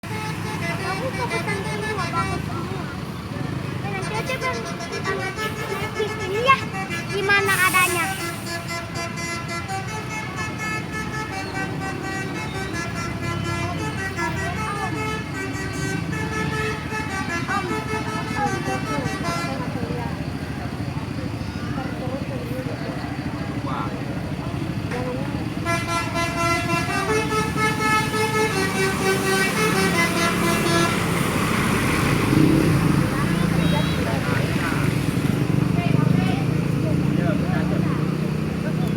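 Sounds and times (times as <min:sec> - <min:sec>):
low engine rumble: 0:00.0 - 0:38.9
multi-tone air horn: 0:04.2 - 0:19.8, 0:25.6 - 0:31.5.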